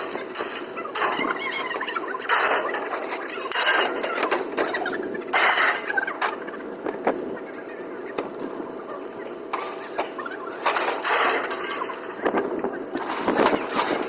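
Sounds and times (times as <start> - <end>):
scattered metal clanks: 9.5 - 12.2
scrap metal crash: 10.6 - 11.9.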